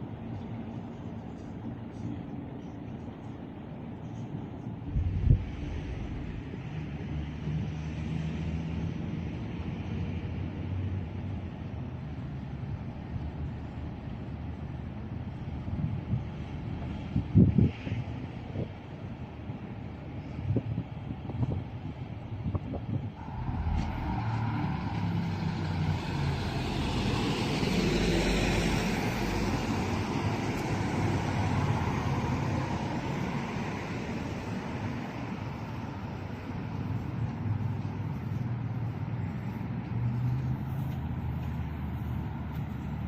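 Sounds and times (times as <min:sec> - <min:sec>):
vehicles passing: 0:04.8 - 0:18.7, 0:22.9 - 0:43.0.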